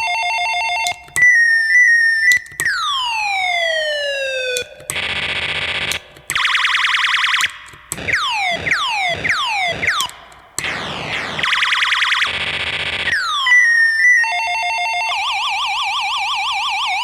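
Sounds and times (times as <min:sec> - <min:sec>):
raygun laser zaps: 0:07.3 - 0:13.4
warbling siren-like tone: 0:08.0 - 0:17.0.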